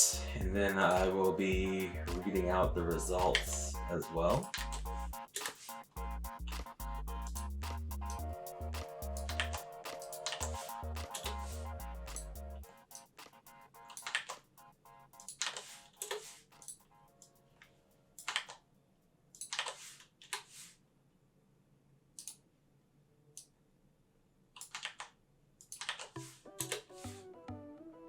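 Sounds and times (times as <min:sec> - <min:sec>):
faint background music: 0:00.0 - 0:18.3, 0:26.2 - 0:28.0
mouse clicks: 0:04.4 - 0:05.8, 0:22.2 - 0:22.4
keyboard keystrokes: 0:24.6 - 0:27.1.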